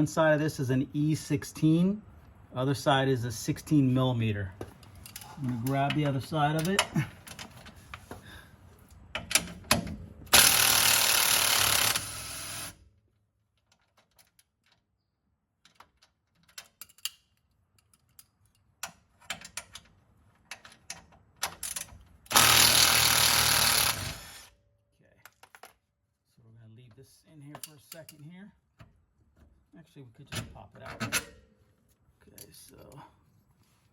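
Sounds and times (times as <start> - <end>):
tools clicking and knocking: 9.1 - 10.5, 15.6 - 22.6
power wrench running: 10.3 - 12.8, 22.3 - 24.5.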